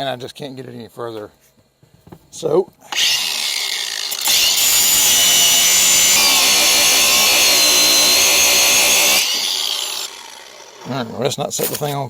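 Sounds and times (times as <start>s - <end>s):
angle grinder grinding metal: 2.9s - 11.1s.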